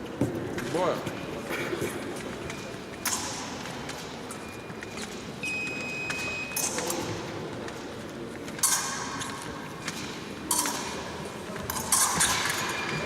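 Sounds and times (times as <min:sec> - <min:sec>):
fencing scoring apparatus beep: 0:04.3 - 0:07.0, 0:12.0 - 0:13.0.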